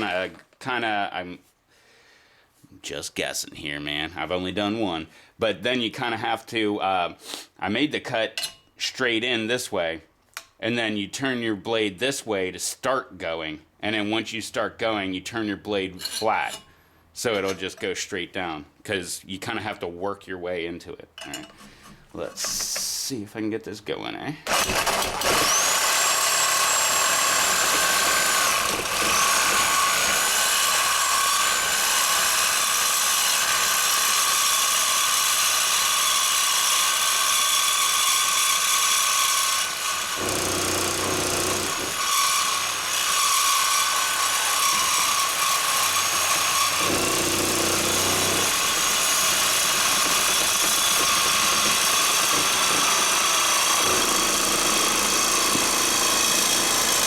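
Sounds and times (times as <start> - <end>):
cut-off wheel whining: 24.5 - 30.4.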